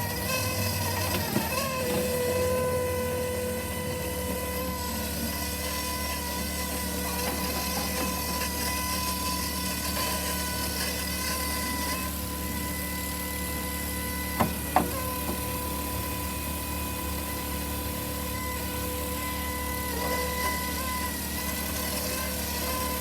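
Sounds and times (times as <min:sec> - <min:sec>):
electric skid steer whine: 0:00.0 - 0:23.0.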